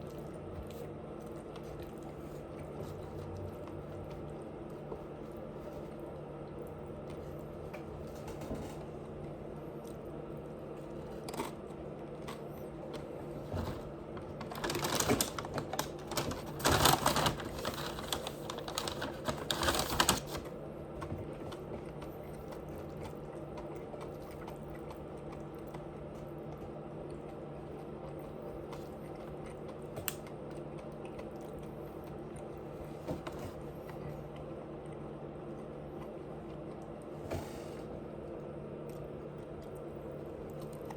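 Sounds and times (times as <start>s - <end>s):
steady low hum: 0.0s - 40.9s
person chewing crunchy food: 21.0s - 37.2s, 38.1s - 40.9s.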